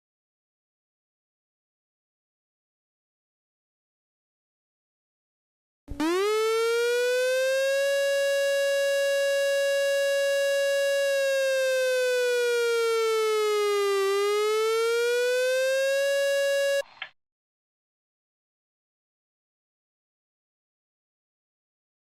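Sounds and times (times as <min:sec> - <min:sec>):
emergency alert siren tone: 0:05.9 - 0:16.9.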